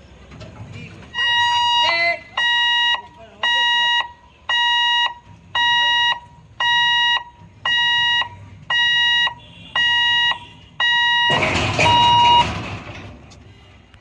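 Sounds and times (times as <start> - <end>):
level crossing alarm beeping: 1.1 - 13.0.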